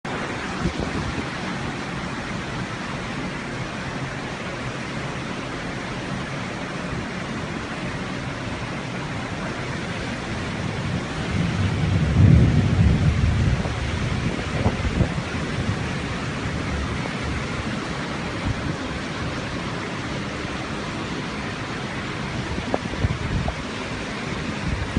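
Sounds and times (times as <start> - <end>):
heavy rain hissing: 0.1 - 24.9
low rumble: 10.3 - 17.5.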